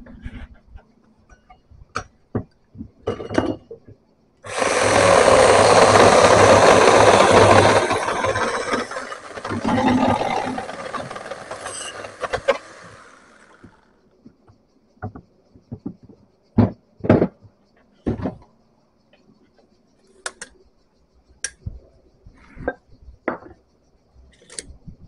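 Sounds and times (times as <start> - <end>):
electric power tool running: 4.5 - 13.9.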